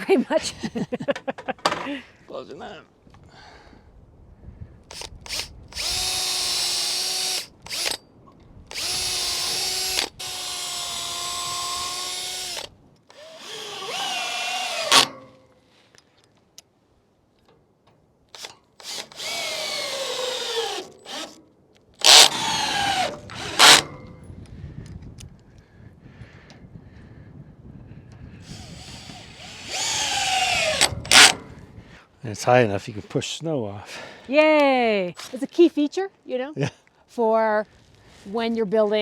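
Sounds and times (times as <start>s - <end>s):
power drill whining: 4.9s - 8.0s, 8.7s - 15.4s, 18.4s - 21.4s, 22.0s - 24.2s, 28.4s - 31.6s.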